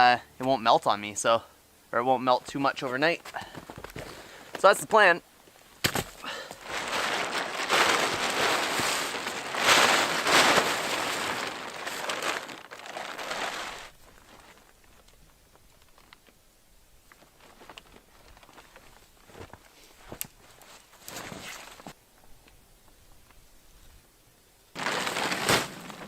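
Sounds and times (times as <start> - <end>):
tarp rustling and crinkling: 2.7 - 16.4, 17.0 - 22.0, 24.7 - 26.0.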